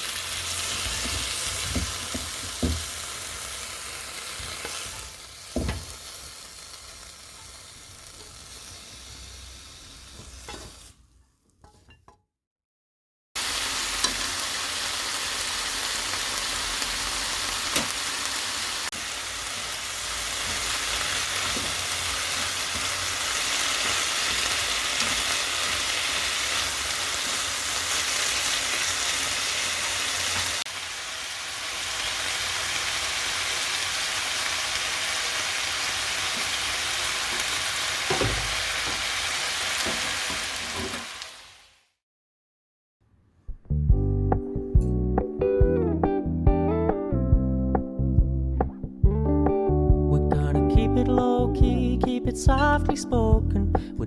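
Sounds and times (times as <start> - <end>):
food sizzling in a frying pan: 0.0 - 11.0, 13.4 - 41.9
utensil knocking against a pan: 1.0 - 2.9.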